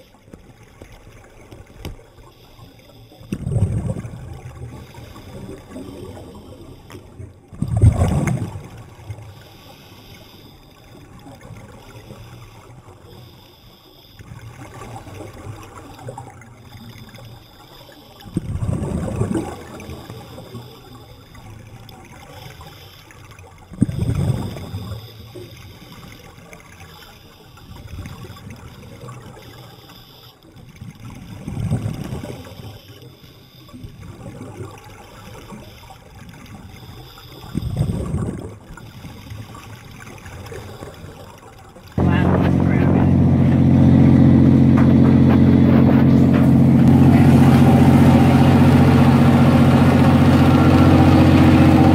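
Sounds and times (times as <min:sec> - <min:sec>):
low water wash: 0:00.0 - 0:26.7, 0:30.7 - 0:51.9
diver's bubbles gurgling: 0:03.2 - 0:09.3, 0:18.3 - 0:20.7, 0:23.6 - 0:26.5, 0:30.7 - 0:32.9, 0:33.8 - 0:51.9.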